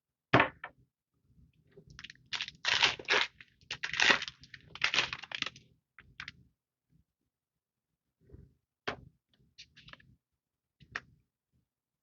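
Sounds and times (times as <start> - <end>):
foil wrapper crinkling: 2.0 - 5.6.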